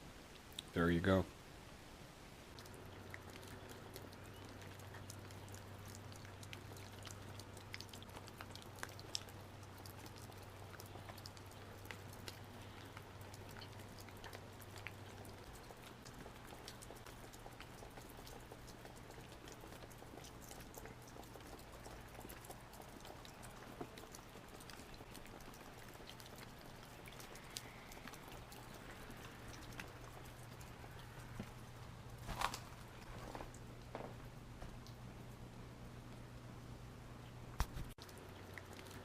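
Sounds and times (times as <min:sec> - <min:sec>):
faint low hum: 0:00.0 - 0:39.0
light ticks and crackles: 0:00.2 - 0:01.2, 0:02.5 - 0:35.4, 0:37.6 - 0:39.0.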